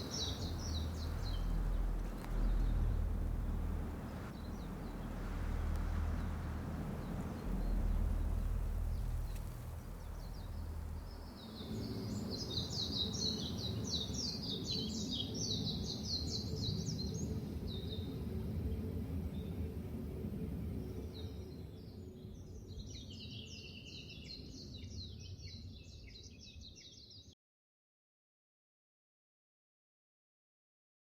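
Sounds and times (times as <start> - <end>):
low rumble: 0.0 - 14.0
small birds twittering: 0.0 - 18.0.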